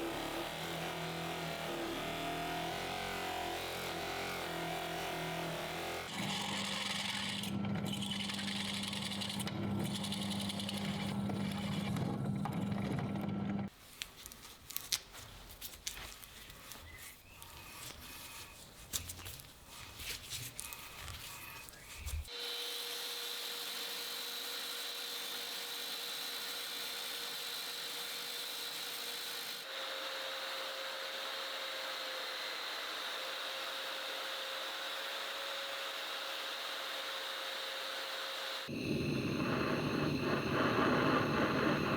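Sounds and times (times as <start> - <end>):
power tool running: 0.0 - 13.7, 22.3 - 41.9
machine whine: 38.7 - 41.9.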